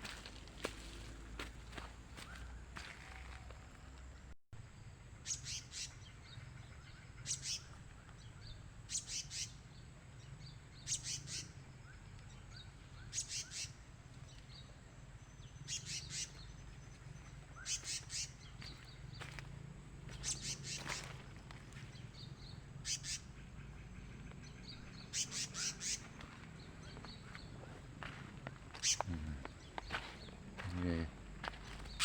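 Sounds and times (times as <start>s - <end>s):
bird chirping: 5.2s - 9.6s, 10.3s - 19.4s, 20.1s - 32.0s.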